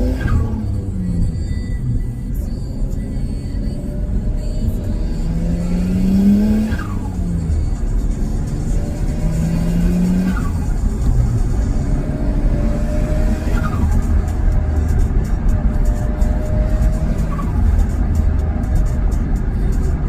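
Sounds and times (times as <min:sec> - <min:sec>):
car engine revving: 0:00.0 - 0:20.0.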